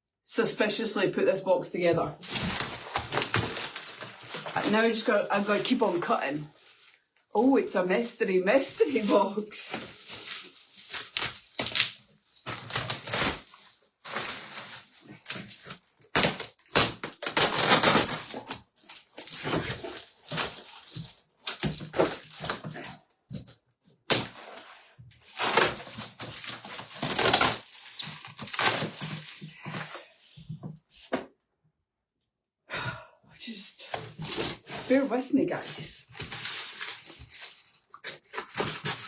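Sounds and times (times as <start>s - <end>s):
packing tape ripping: 2.3s - 4.5s, 10.0s - 22.6s, 25.3s - 29.4s
cardboard box being cut open: 14.2s - 20.8s.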